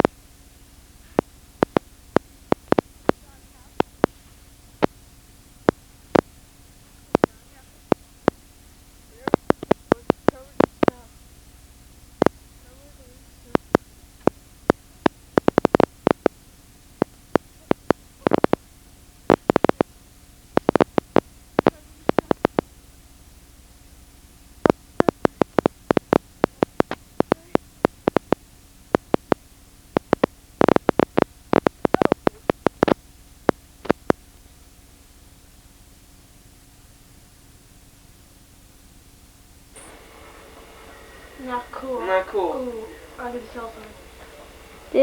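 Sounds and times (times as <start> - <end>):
steady low hum: 0.0 - 45.0
sharp clicks and crackles: 1.1 - 5.0, 7.1 - 8.4, 9.2 - 11.1, 13.5 - 16.4, 17.0 - 18.6, 19.3 - 19.9, 20.5 - 22.7, 24.6 - 34.2.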